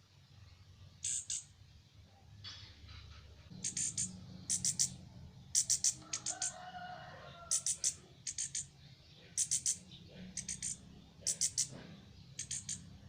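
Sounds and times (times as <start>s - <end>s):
thrush giving harsh high calls: 1.0s - 1.5s, 3.6s - 5.0s, 5.6s - 6.6s, 7.5s - 8.7s, 9.4s - 9.8s, 10.4s - 11.8s, 12.4s - 12.9s
rooster crowing faintly: 5.8s - 8.6s.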